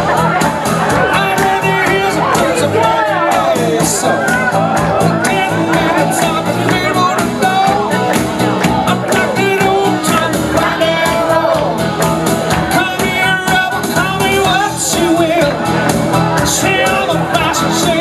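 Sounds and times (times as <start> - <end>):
rock song with singer: 0.0 - 18.0
steady drum beat: 0.0 - 18.0.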